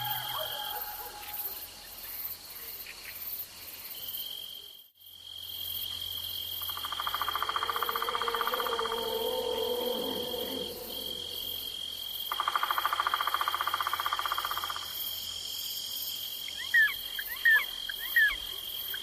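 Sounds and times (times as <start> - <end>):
pulsing cricket trill: 0.0 - 2.6, 5.7 - 16.1
high insect drone: 0.0 - 19.0.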